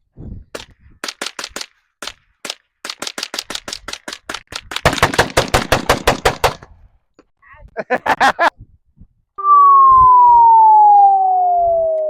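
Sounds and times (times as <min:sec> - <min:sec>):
gunshots: 0:02.4 - 0:06.6.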